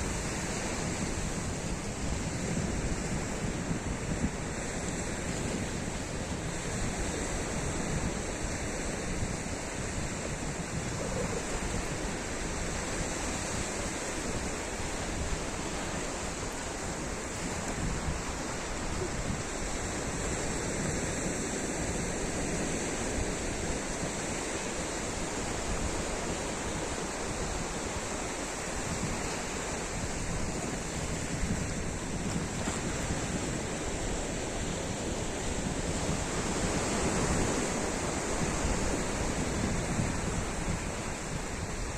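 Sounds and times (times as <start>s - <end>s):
sea waves breaking on beach: 0.0s - 41.9s
wind buffeting microphone: 0.0s - 41.9s.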